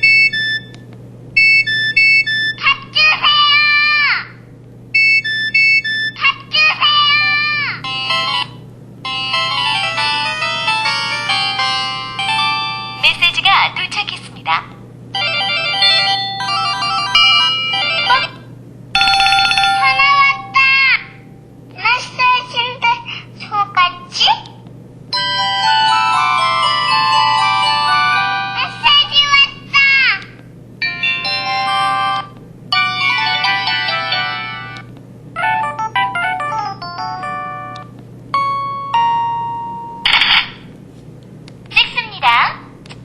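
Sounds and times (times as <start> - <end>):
phone ringtone melody: 7.8 - 13.0, 15.2 - 18.4, 19.0 - 20.9, 25.2 - 28.8, 30.8 - 34.8, 35.4 - 40.1
phone ringtone jingles: 19.0 - 20.7.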